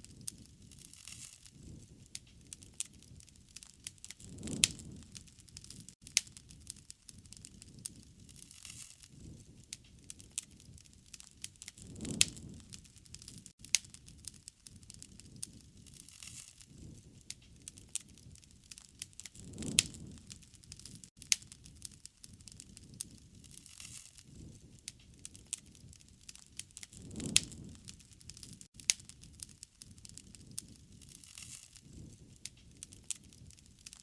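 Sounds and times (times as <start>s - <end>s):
low rumble of flame: 0.0s - 34.0s
wood fire crackling and popping: 0.0s - 34.0s.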